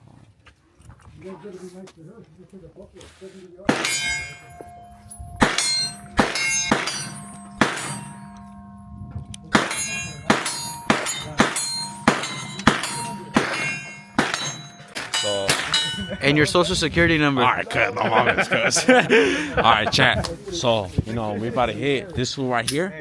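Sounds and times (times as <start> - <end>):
handgun shots with metallic ring: 3.7 - 16.1.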